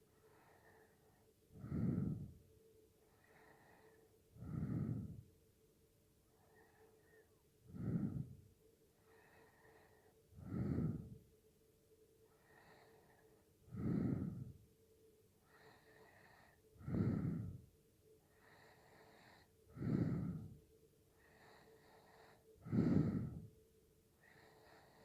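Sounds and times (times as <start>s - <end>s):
soft breathing out: 0.0s - 5.4s, 6.3s - 11.3s, 12.3s - 14.6s, 15.4s - 23.6s
person snoring: 1.6s - 2.4s, 4.4s - 5.2s, 7.7s - 8.4s, 10.4s - 11.2s, 19.7s - 20.6s, 22.0s - 23.5s.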